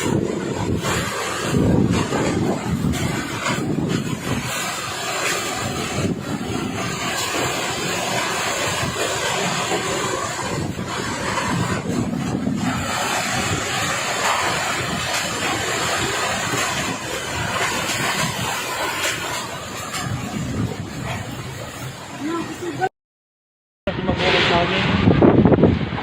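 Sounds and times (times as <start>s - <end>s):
strong wind gusting: 0.0s - 22.9s, 23.9s - 26.0s.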